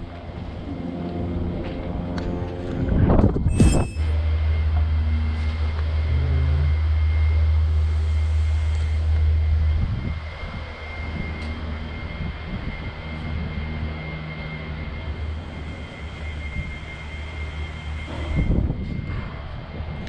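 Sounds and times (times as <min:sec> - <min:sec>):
helicopter low drone: 0:00.0 - 0:20.0
mechanical hum: 0:00.0 - 0:20.0
thin high whine: 0:00.0 - 0:20.0.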